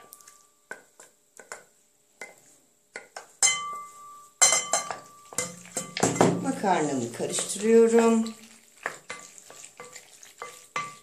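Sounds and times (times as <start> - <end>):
utensil clinking against bowl: 3.0 - 11.0.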